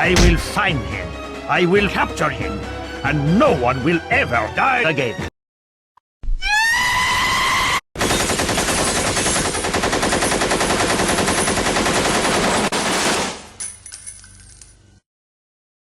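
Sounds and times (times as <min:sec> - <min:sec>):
rapid automatic gunfire: 0:08.0 - 0:13.5.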